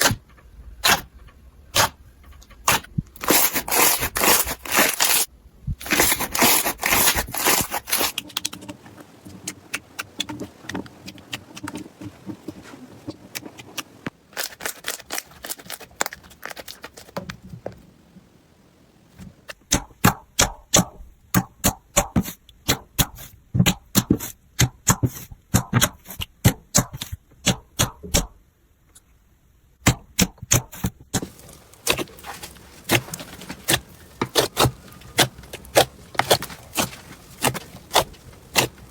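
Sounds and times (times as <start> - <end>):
slime crackling and popping: 2.7 - 8.6, 31.2 - 38.9.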